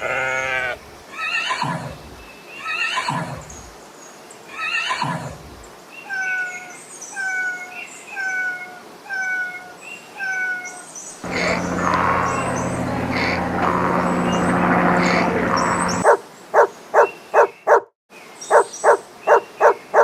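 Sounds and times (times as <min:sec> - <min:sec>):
horse whinnying: 0:00.0 - 0:02.0, 0:02.6 - 0:03.5, 0:04.6 - 0:05.4
loud sound with low hum: 0:11.2 - 0:16.0.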